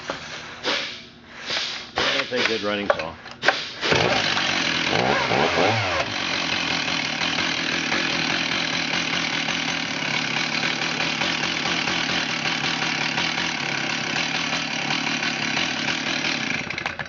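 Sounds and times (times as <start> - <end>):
chainsaw revving and idling: 3.8 - 17.0.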